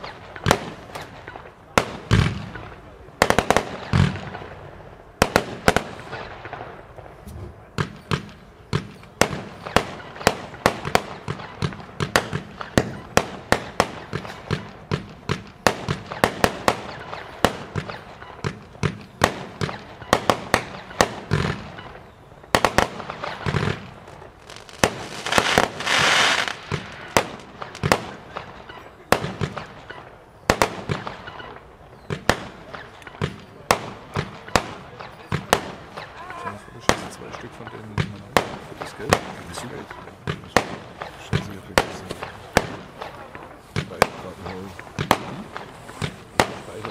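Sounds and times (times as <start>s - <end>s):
fireworks sharp bangs: 0.0s - 46.9s.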